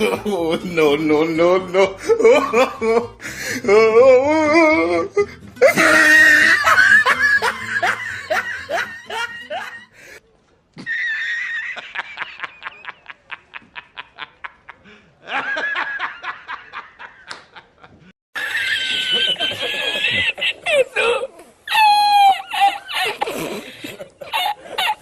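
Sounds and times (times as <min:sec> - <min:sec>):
stock laughter: 0:05.6 - 0:09.9, 0:10.8 - 0:25.0.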